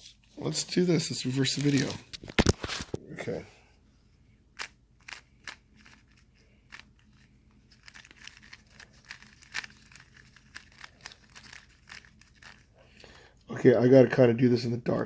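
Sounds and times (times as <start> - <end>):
speed cube layers clicking: 4.6 - 7.2, 7.8 - 12.6.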